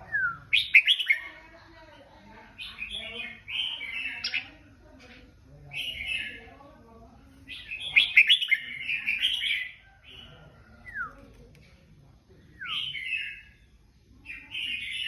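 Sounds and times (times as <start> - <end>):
birds warbling song: 0.0 - 1.4, 2.4 - 6.6, 7.4 - 11.2, 12.5 - 15.0.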